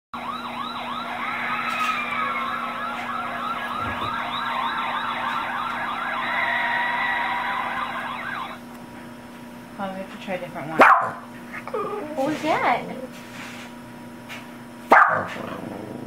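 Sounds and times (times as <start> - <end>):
police siren yelp through speaker: 0.2 - 8.6.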